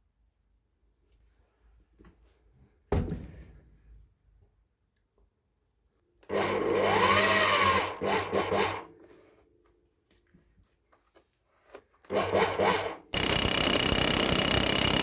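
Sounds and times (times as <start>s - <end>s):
rotary hammer motor running: 12.4s - 15.0s.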